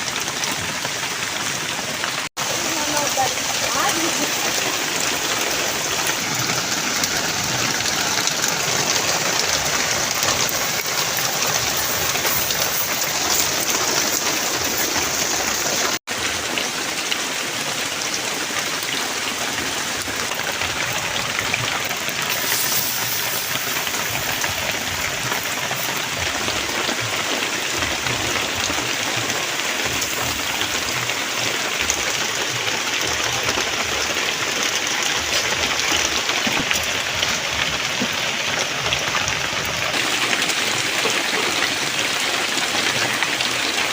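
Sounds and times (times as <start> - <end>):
fish sizzling in hot oil: 2.5 - 16.0, 22.1 - 31.0.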